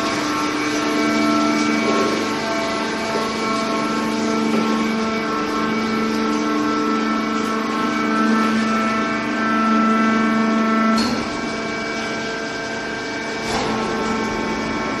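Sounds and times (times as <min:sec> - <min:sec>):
hydraulic press motor humming: 0:00.0 - 0:15.0.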